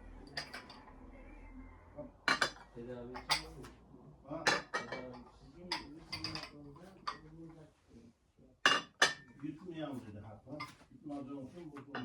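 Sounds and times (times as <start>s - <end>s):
dishes and cutlery clinking: 0.3s - 0.9s, 2.3s - 3.7s, 4.4s - 7.3s, 8.6s - 9.4s, 10.5s - 10.9s, 11.8s - 12.0s.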